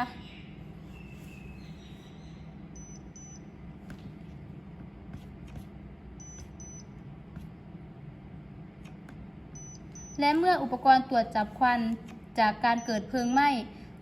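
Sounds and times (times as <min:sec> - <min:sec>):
steady low hum: 0:00.0 - 0:14.0
smoke alarm beeping: 0:02.7 - 0:03.5, 0:06.2 - 0:07.0, 0:09.5 - 0:10.3, 0:12.7 - 0:13.6.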